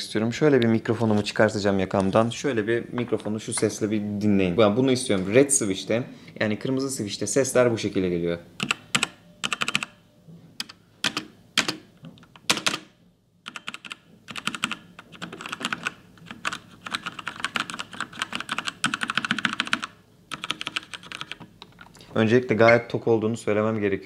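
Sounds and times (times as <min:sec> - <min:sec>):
mechanical keyboard typing: 0:08.6 - 0:10.0, 0:12.4 - 0:12.9, 0:13.5 - 0:21.9.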